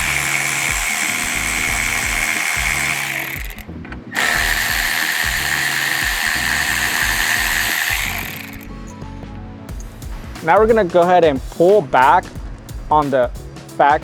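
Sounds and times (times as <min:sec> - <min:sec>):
power driver whining: 0:00.0 - 0:09.1.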